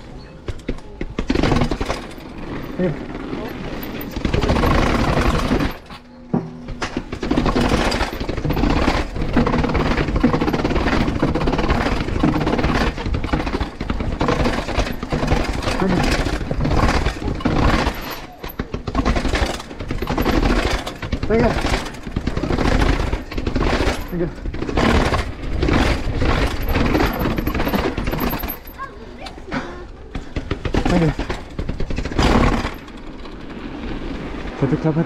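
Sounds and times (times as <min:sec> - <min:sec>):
tyres rumbling over dirt and rocks: 0:00.0 - 0:35.0
bike chain clattering on frame: 0:01.2 - 0:28.9.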